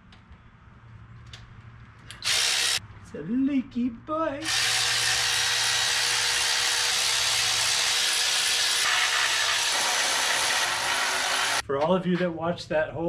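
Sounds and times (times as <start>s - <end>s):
power tool running: 2.2s - 2.8s, 4.4s - 11.6s.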